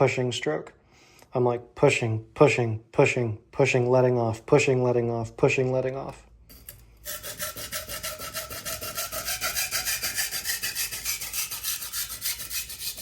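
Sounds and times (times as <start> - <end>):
knife scraping on sharpening stone: 6.5 - 13.0.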